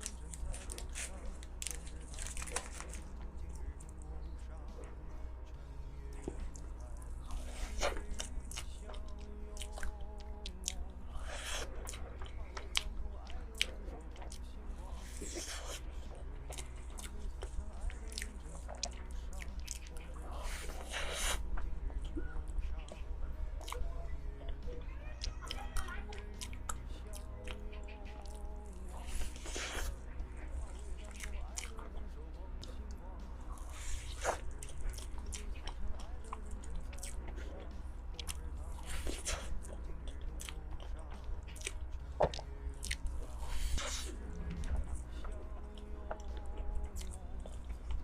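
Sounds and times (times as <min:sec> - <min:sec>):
chewing soft cake: 0:00.0 - 0:48.0
steady low hum: 0:00.0 - 0:48.0
wet mouth clicks: 0:41.4 - 0:45.4.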